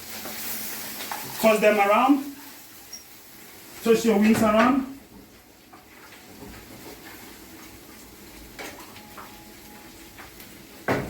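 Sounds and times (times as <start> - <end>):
sizzling in a hot pan: 0.0 - 11.0.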